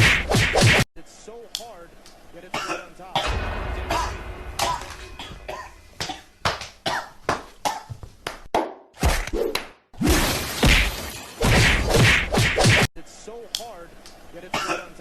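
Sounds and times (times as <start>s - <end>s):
person coughing: 2.5s - 8.0s, 14.5s - 15.0s.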